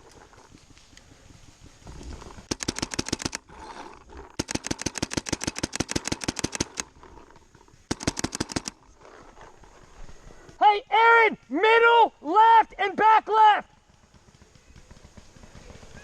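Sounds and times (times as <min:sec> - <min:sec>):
paintball marker firing: 0:02.5 - 0:03.4, 0:04.4 - 0:07.1, 0:07.9 - 0:08.8.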